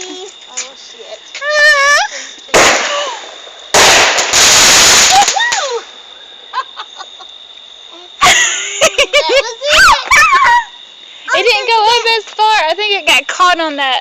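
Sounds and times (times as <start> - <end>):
firework bang: 2.5 - 6.0
firework rushing noise: 2.5 - 6.0.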